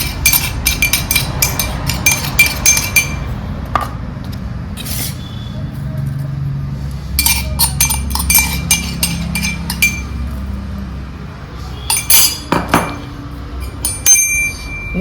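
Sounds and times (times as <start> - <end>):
metal mortar and pestle clinking: 0.0 - 4.0, 7.1 - 10.5, 11.8 - 15.0.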